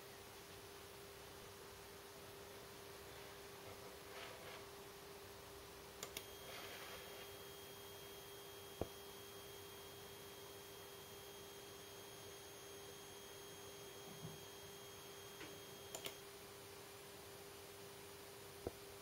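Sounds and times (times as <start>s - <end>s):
faint electrical buzz: 0.0s - 19.0s
clicks: 6.0s - 6.3s, 15.4s - 16.2s
thin high whine: 6.1s - 16.2s.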